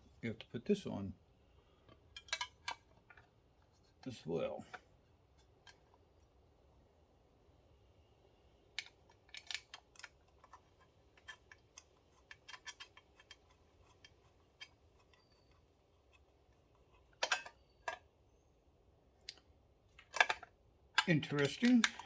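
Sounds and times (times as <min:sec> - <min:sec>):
light clicks and knocks of parts: 0:01.7 - 0:06.1, 0:08.7 - 0:18.1, 0:19.2 - 0:22.0.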